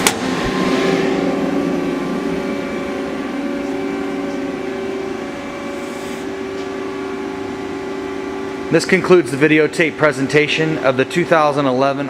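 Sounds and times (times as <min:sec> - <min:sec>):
machine hum with held tones: 0:00.0 - 0:12.0.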